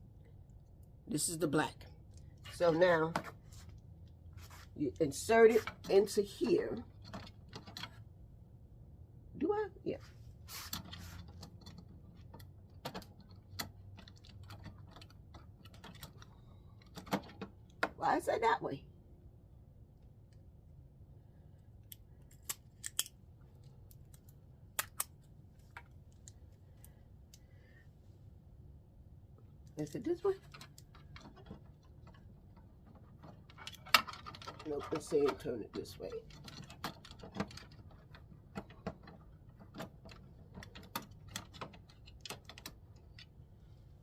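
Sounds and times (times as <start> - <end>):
light plastic clicks and knocks: 30.4 - 43.4.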